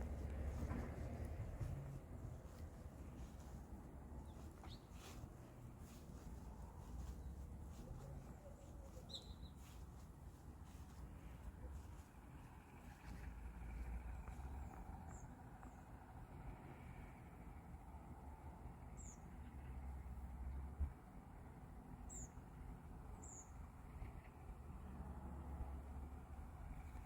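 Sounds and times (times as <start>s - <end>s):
wind rumble on microphone: 0.0s - 8.7s
low steady rumble: 0.0s - 18.9s
high falling bird chirps: 8.8s - 9.8s.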